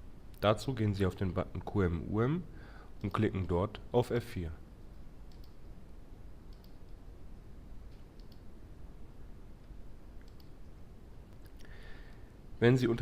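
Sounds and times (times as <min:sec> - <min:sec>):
low room hum: 0:00.0 - 0:13.0
computer mouse clicks: 0:04.9 - 0:05.6, 0:06.5 - 0:07.0, 0:07.9 - 0:08.5, 0:10.2 - 0:11.6.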